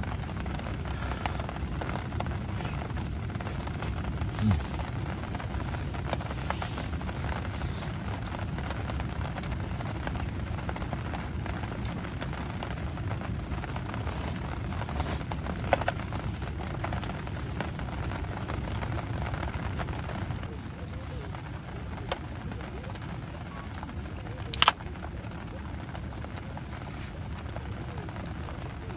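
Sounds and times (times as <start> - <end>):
campfire crackling: 0.0 - 28.9
steady rain falling: 0.0 - 28.9.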